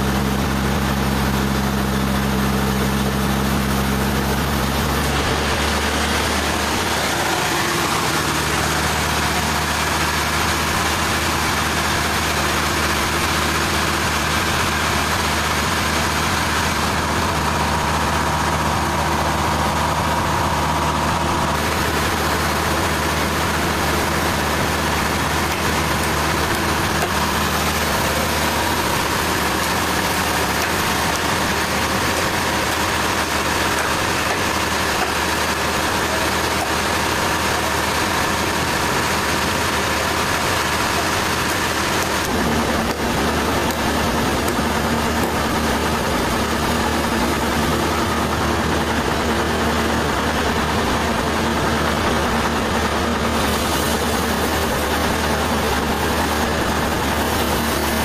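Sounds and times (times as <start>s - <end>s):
engine hum: 0.0s - 58.0s.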